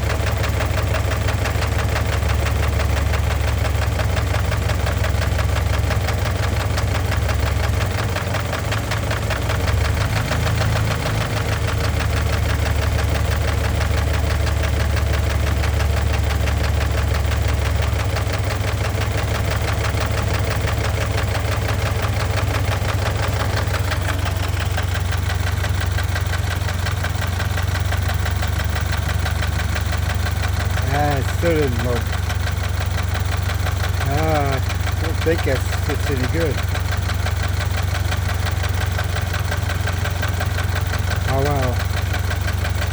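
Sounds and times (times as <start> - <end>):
engine idling: 0.0 - 42.9
rapid engine knock: 0.0 - 42.9.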